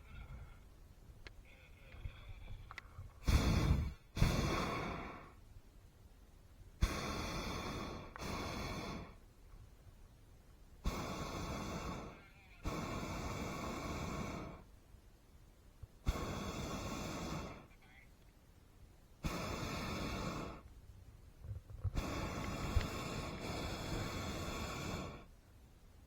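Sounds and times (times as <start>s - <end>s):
propane burner blasts: 3.2s - 5.4s, 6.8s - 9.2s, 10.8s - 14.7s, 16.0s - 17.7s, 19.2s - 20.8s, 21.6s - 25.4s.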